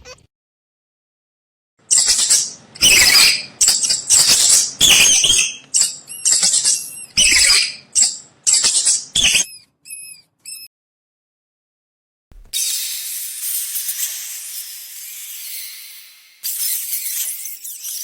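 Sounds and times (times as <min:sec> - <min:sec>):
high-pitched mouse squeaks: 0:01.9 - 0:10.7, 0:13.8 - 0:18.0.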